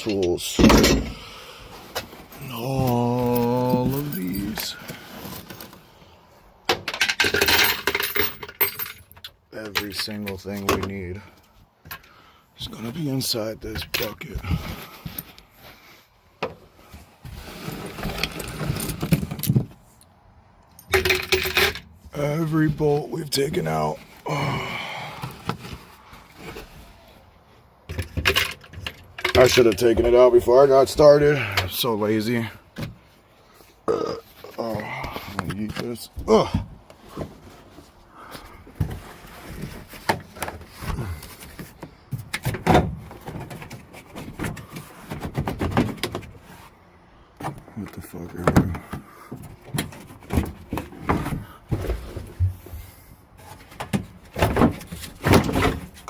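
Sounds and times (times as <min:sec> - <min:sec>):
bolts and tools rattling in bucket: 0:00.0 - 0:01.2, 0:02.2 - 0:05.8, 0:06.7 - 0:12.1, 0:13.7 - 0:15.3, 0:17.6 - 0:19.8, 0:20.7 - 0:23.6, 0:27.9 - 0:33.0.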